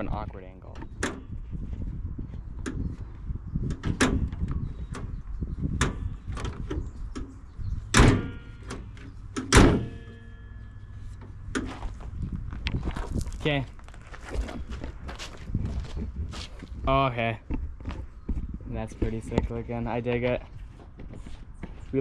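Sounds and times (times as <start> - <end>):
car hood shutting with metal clunk: 7.9 - 10.2.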